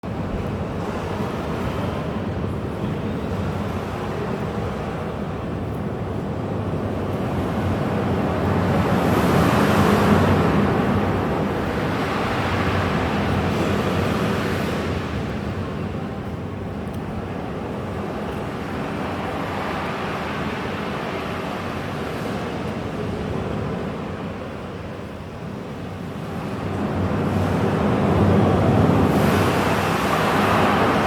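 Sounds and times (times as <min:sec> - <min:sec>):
sea waves breaking on shore: 0:07.3 - 0:15.6, 0:25.9 - 0:31.0.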